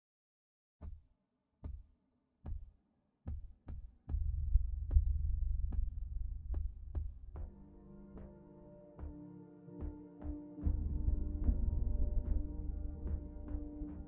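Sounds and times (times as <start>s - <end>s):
continuous low rumble: 4.2s - 7.4s, 10.7s - 14.0s.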